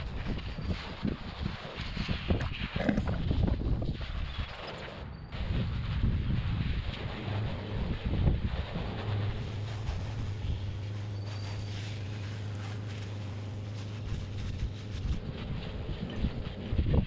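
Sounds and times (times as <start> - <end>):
wind noise on microphone: 0.0 - 17.0
engine humming: 4.8 - 17.0.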